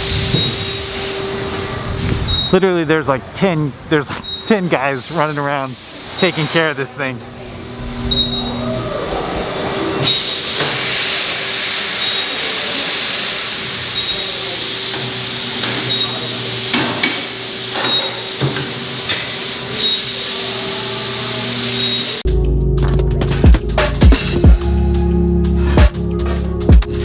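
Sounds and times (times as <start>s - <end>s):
steady hiss: 4.8s - 6.8s
music with heavy beat: 22.3s - 27.0s.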